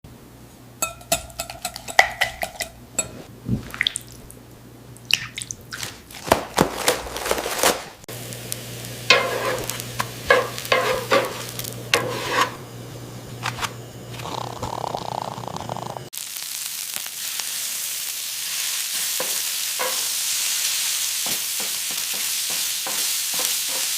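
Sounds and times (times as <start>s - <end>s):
utensils and dishes clattering: 0.8s - 3.3s, 9.1s - 12.6s.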